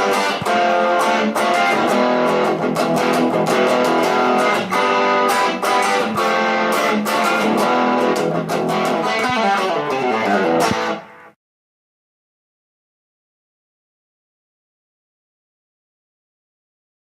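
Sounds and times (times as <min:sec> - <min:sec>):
electric guitar rock riff: 0:00.0 - 0:11.4.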